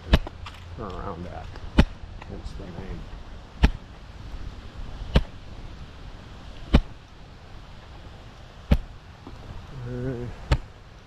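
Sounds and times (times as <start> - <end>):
hiking staff thumping ground: 0.0 - 2.3, 3.6 - 3.9, 5.1 - 5.4, 6.6 - 7.0, 8.7 - 9.4
wind rumbling on microphone: 0.0 - 11.0.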